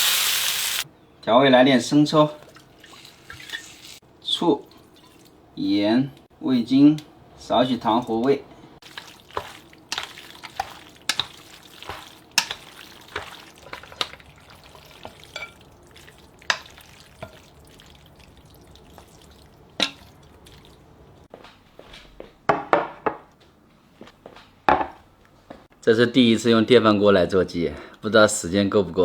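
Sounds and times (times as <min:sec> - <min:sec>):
soft wet rustle of noodles: 0:08.8 - 0:21.3.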